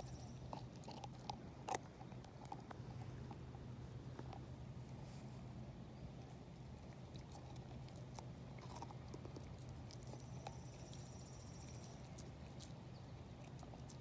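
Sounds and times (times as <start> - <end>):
teeth scraping on bone: 0.0 - 3.6, 6.8 - 14.0
steady low hum: 0.0 - 14.0.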